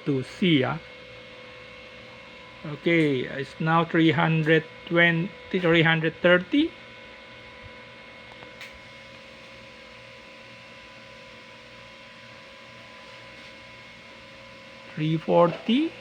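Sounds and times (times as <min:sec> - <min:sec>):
electrical mains hum: 0:00.0 - 0:16.0.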